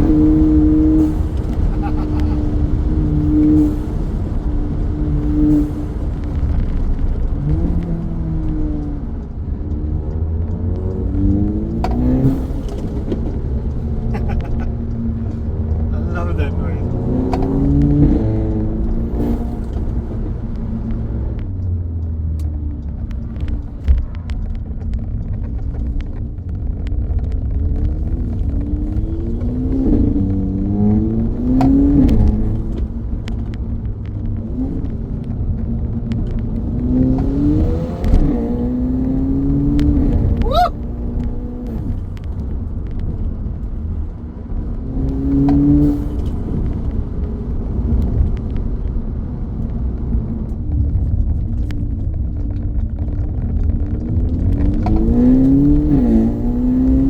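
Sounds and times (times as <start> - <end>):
car engine accelerating: 0.0 - 57.0.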